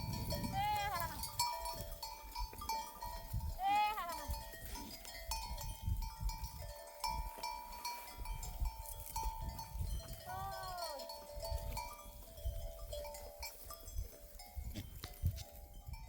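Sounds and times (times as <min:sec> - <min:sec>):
sheep neck bells jingling: 0:00.0 - 0:16.0
sheep bleating: 0:00.4 - 0:01.4.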